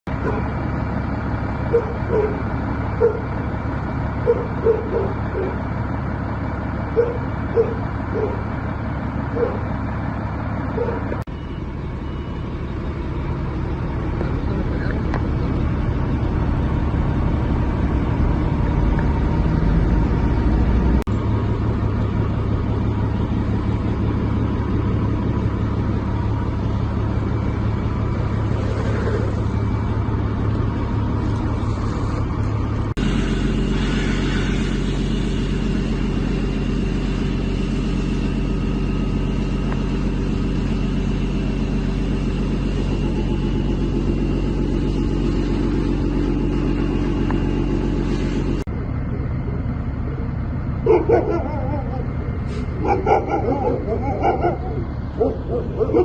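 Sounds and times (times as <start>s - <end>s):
low engine rumble: 0.0s - 56.0s.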